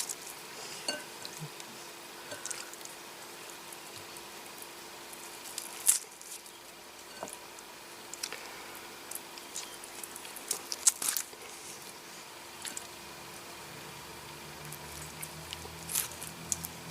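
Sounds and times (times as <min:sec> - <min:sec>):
embers crackling: 0:00.0 - 0:16.9
faint steady hum: 0:00.0 - 0:16.9.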